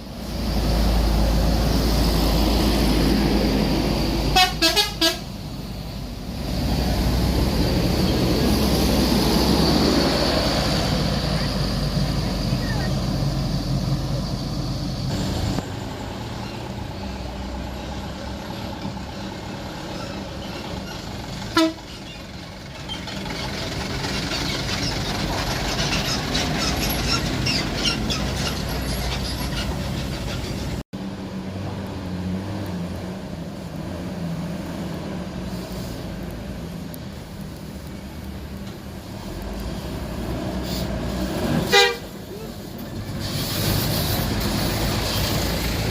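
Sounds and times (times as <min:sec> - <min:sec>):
bus engine rumbling: 0:00.0 - 0:45.9
bus horn toot: 0:04.3 - 0:05.3, 0:21.5 - 0:22.0, 0:41.6 - 0:42.2.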